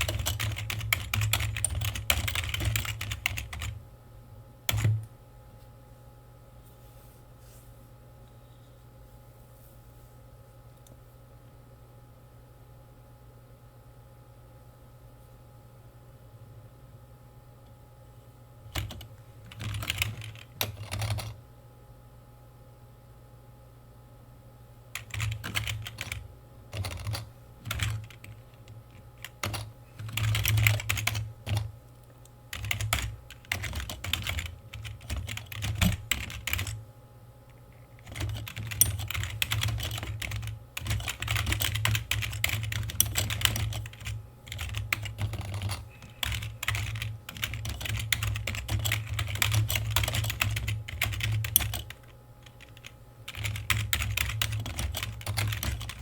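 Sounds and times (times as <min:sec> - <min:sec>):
typing on computer keyboard: 0:00.0 - 0:03.8, 0:04.7 - 0:05.0, 0:18.7 - 0:21.4, 0:25.0 - 0:31.7, 0:32.5 - 0:36.8, 0:38.0 - 0:56.0.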